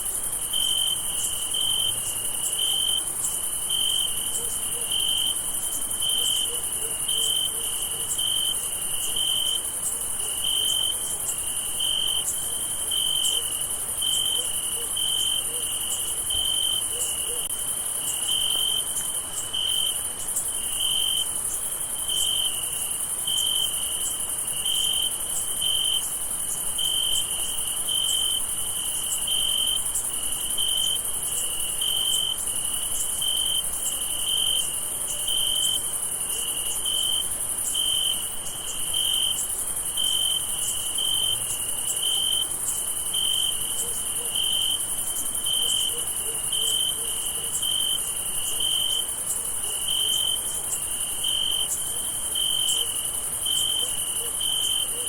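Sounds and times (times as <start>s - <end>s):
crickets chirping: 0.0s - 55.0s.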